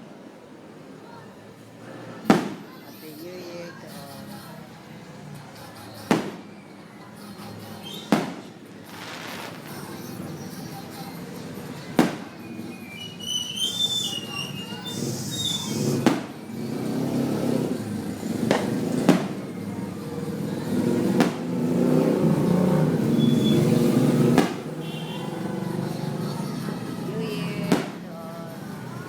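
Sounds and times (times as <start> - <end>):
firecracker bangs: 2.2 - 2.9, 6.1 - 6.5, 7.9 - 10.2, 11.9 - 25.4, 27.6 - 28.2.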